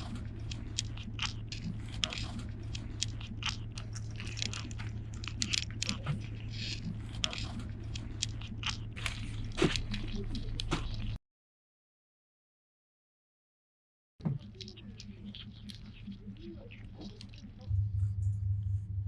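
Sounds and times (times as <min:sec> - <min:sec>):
kittens crunching cat food: 0:00.0 - 0:11.2, 0:14.3 - 0:17.7
steady low hum: 0:00.0 - 0:11.2, 0:14.2 - 0:19.0.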